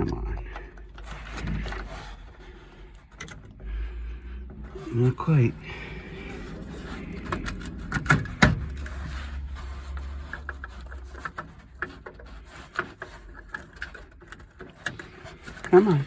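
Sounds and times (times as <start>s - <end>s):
cable rubbing and scraping: 0.0s - 16.0s
small irregular ticks and taps: 10.3s - 16.0s.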